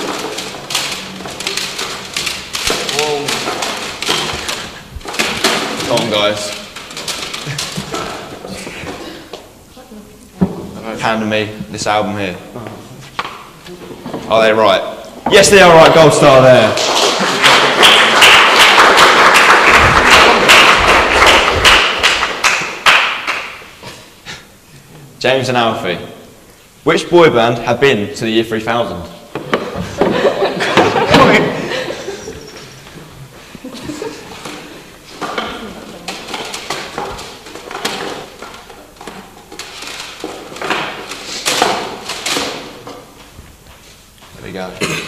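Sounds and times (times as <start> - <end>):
album cases clattering: 0.0 - 9.3, 15.3 - 23.4, 29.4 - 32.9, 33.7 - 43.3
audience clapping: 15.8 - 23.8.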